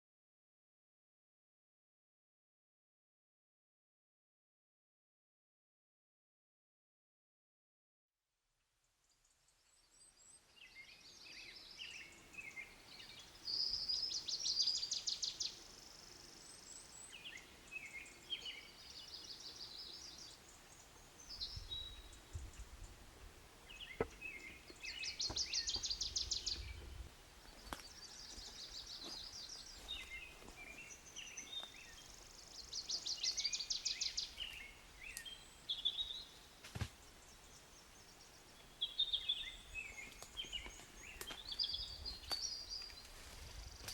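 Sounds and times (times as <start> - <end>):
songbirds singing with buzzy trills: 9.0 - 43.9.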